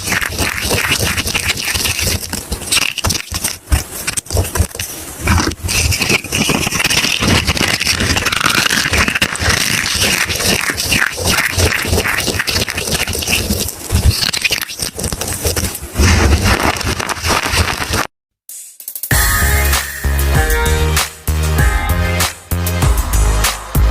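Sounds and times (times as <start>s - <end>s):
soap crunching and crackling: 0.0s - 18.1s.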